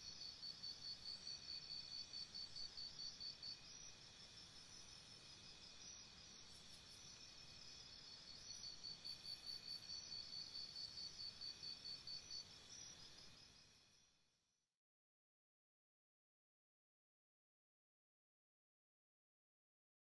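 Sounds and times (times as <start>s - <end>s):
cricket chirping: 0.0s - 14.5s.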